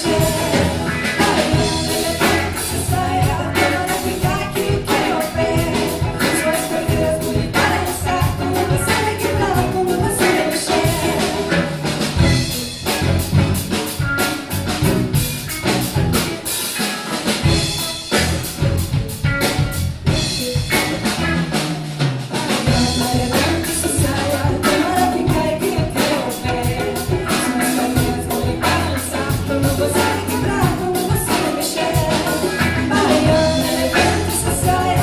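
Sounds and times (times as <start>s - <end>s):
person singing: 0.0s - 12.0s, 22.4s - 35.0s.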